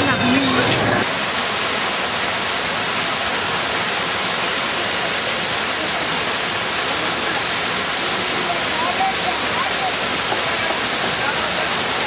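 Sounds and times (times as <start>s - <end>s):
waterfall rushing: 0.1s - 12.0s.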